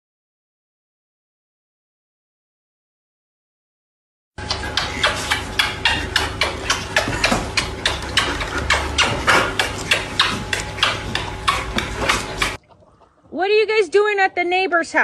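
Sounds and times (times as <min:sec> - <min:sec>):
rapid regular knocking: 0:04.4 - 0:12.6
steady low hum: 0:04.4 - 0:15.0.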